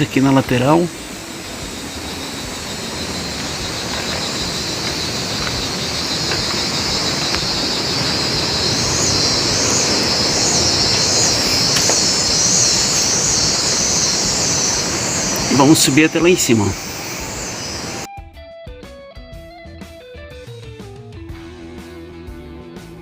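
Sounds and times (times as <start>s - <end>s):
high shrill buzzing: 0.0s - 18.1s
river water rushing: 0.0s - 18.1s.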